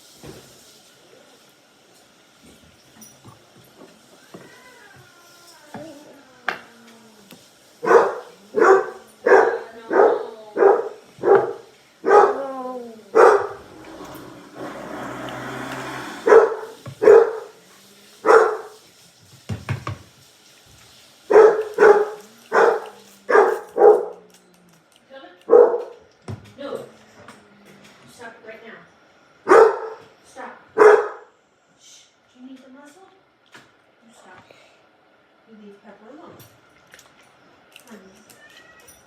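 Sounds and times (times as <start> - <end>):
noisy hiss: 0.0 - 25.2
dog barking: 7.8 - 12.4, 13.1 - 14.2, 16.2 - 17.6, 18.2 - 18.8, 21.3 - 24.2, 25.5 - 26.0, 29.5 - 30.1, 30.8 - 31.3.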